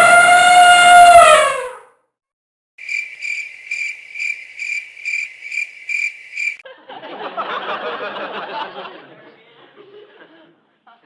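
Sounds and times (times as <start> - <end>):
crickets chirping: 2.8 - 6.6.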